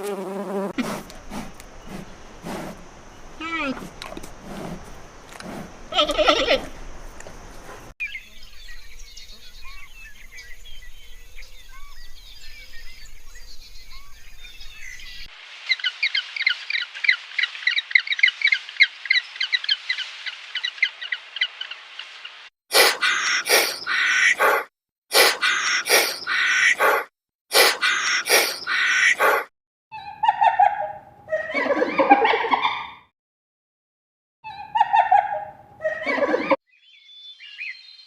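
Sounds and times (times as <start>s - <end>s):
bird harsh calls: 0.8s - 7.0s, 22.8s - 29.5s
birds chirping and twittering: 1.1s - 24.6s, 36.3s - 38.0s.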